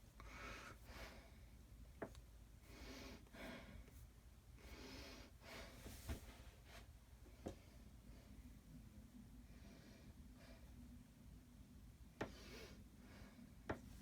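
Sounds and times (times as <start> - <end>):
soft breaths: 0.0 - 11.4, 12.0 - 14.0.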